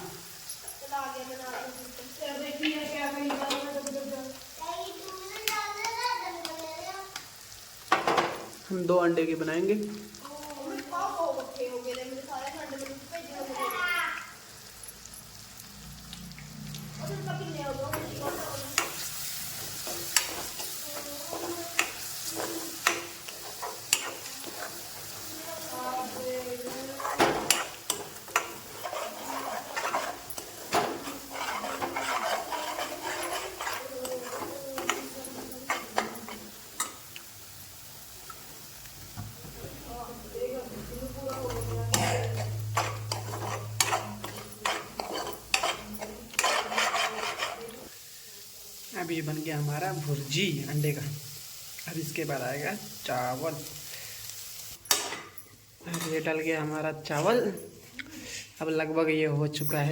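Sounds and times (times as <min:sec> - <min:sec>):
eggs sizzling in a pan: 0:00.0 - 0:59.2
metal spatula scraping pan: 0:17.6 - 0:37.0, 0:40.7 - 0:47.9.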